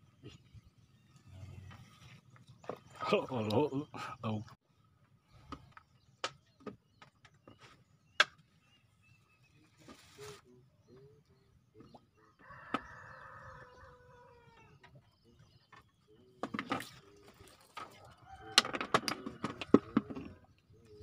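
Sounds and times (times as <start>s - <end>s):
rooster crowing: 12.4s - 14.7s, 18.0s - 19.7s.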